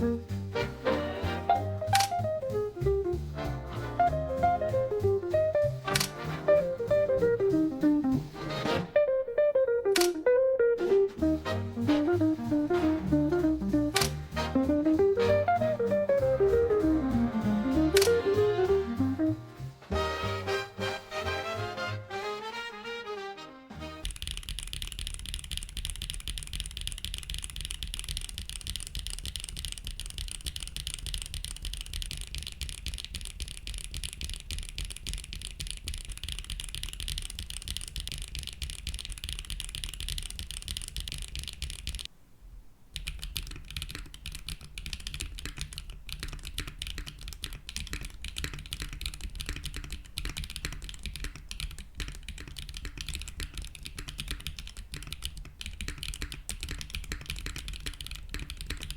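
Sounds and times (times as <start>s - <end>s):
fast keyboard typing: 1.8s - 3.2s, 4.0s - 8.2s, 11.8s - 19.3s, 24.0s - 42.1s, 43.0s - 58.9s.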